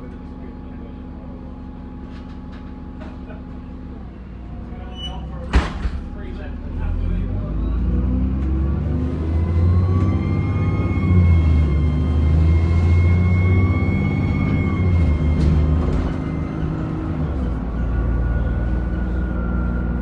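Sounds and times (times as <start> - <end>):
bus engine running: 0.0 - 20.0
high turbocharger whine: 6.7 - 20.0.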